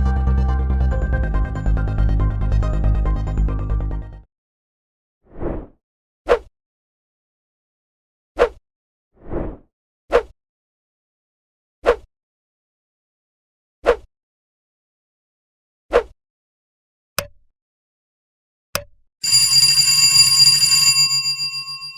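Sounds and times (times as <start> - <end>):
bright bell-like ringing: 19.2 - 21.9.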